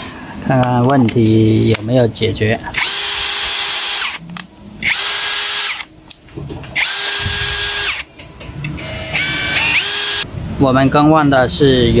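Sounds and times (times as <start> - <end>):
impact wrench motor running: 2.8 - 4.2, 4.8 - 5.9, 6.8 - 8.1, 9.0 - 10.3.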